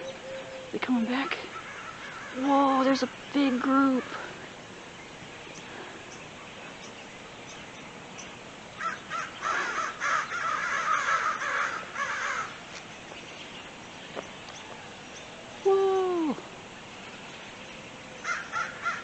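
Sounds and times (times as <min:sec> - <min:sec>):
flock of crows cawing: 0:01.4 - 0:02.8, 0:08.8 - 0:12.6, 0:18.2 - 0:19.0.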